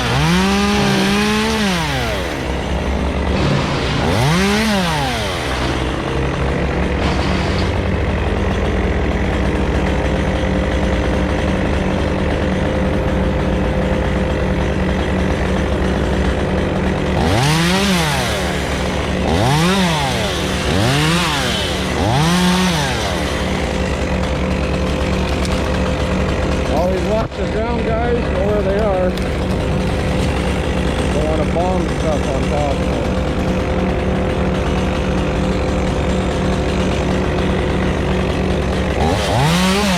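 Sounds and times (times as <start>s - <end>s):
chainsaw revving: 0.0s - 39.9s
engine drone: 0.0s - 39.9s.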